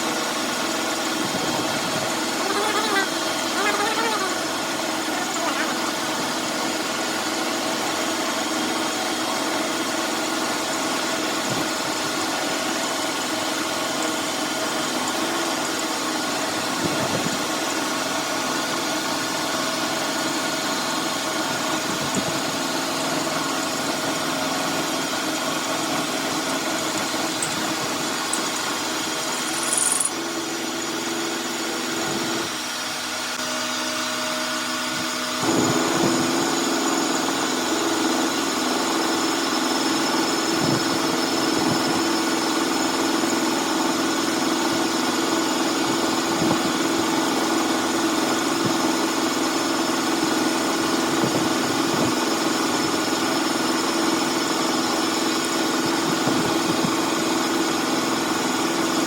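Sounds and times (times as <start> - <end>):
machine tool motor humming: 20.2 - 30.9.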